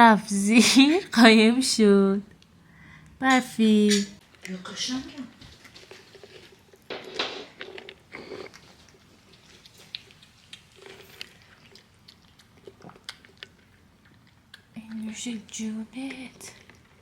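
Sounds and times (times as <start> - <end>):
cat chewing and crunching food: 4.2 - 17.0.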